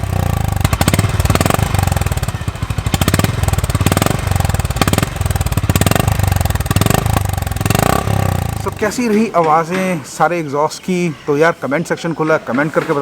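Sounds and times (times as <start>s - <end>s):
motorcycle exhaust revving: 0.0s - 8.9s.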